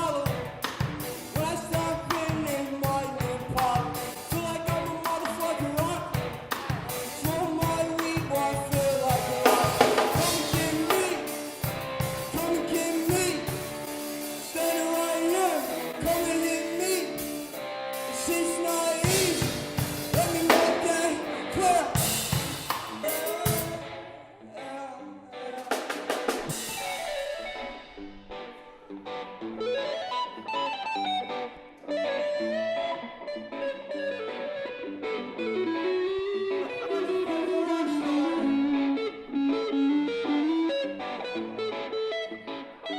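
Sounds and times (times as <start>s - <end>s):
drum kit playing busy beats: 0.0s - 23.8s, 25.6s - 28.3s
electric guitar lines: 0.0s - 42.9s.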